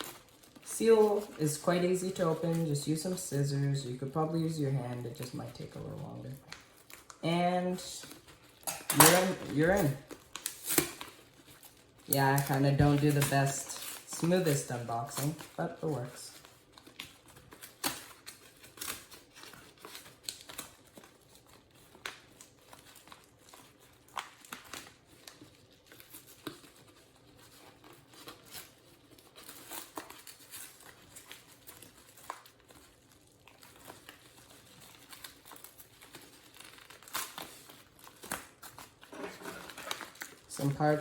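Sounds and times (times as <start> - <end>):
plastic packaging crinkling: 0.0 - 41.0.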